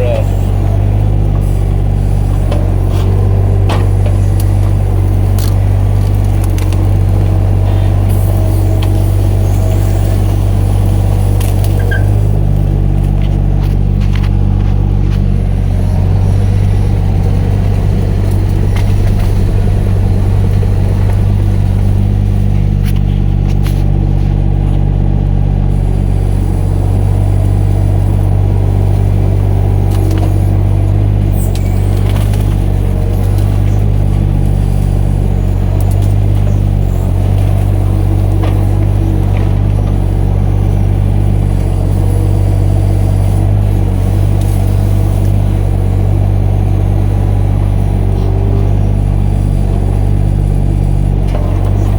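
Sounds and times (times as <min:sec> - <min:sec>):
excavator engine running: 0:00.0 - 0:51.9.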